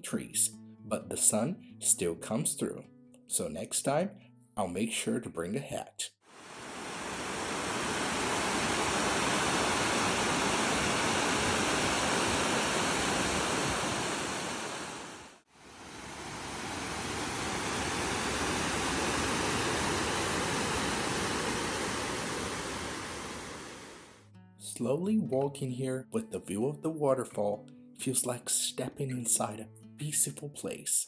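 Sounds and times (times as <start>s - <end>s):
waterfall rushing: 6.3s - 24.1s.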